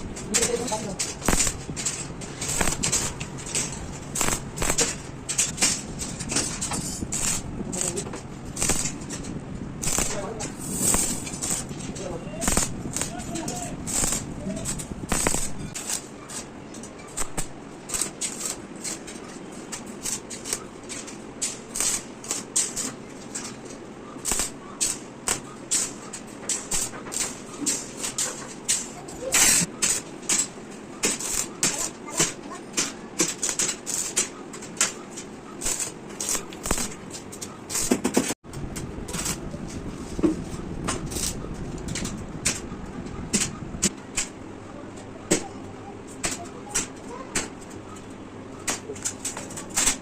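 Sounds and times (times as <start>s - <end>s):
steady background noise: 0.0s - 50.0s
hissy scraping strokes on metal: 9.8s - 16.5s.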